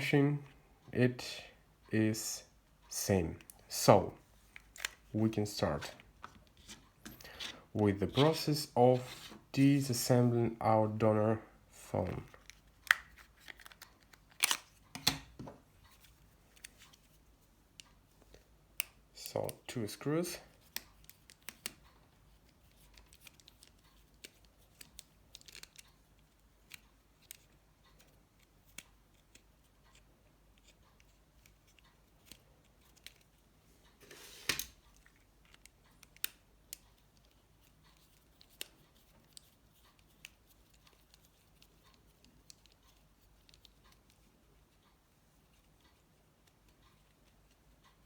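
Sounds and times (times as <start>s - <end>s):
small clicks of screwdriver and parts: 4.5s - 5.1s, 12.1s - 17.1s, 17.7s - 19.7s, 20.6s - 48.0s.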